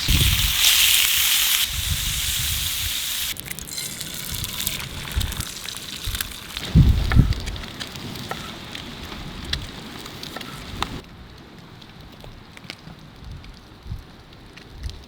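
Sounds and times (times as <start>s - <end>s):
wind rumble on microphone: 0.0s - 0.6s, 1.7s - 3.0s, 6.1s - 11.4s, 13.0s - 15.0s
wood fire crackling: 0.0s - 15.0s.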